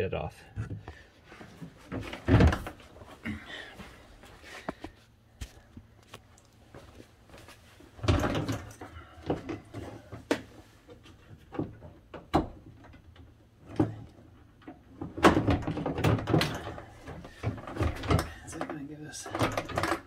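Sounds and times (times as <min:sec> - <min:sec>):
door latch clicks and rattles: 0:19.3 - 0:20.0.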